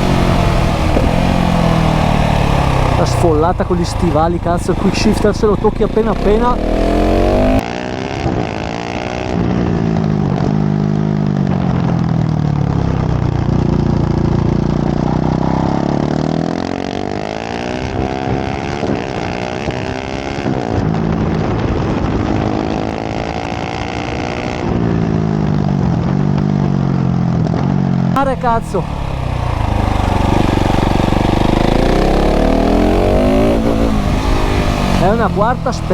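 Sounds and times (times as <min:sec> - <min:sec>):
wind noise: 0:00.0 - 0:04.1, 0:32.6 - 0:35.3
motorcycle engine accelerating hard: 0:00.0 - 0:35.9.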